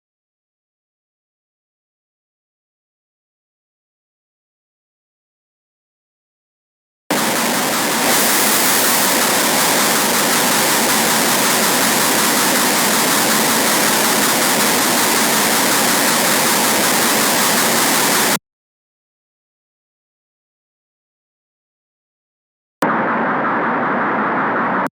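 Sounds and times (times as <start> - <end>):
harsh static noise: 7.1 - 18.4, 22.8 - 24.9.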